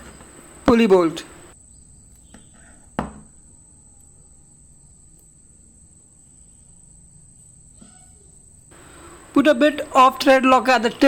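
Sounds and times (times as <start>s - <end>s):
steady high-pitched whine: 0.0s - 1.6s, 8.7s - 11.0s
faint low hum: 0.0s - 2.6s, 3.4s - 11.0s.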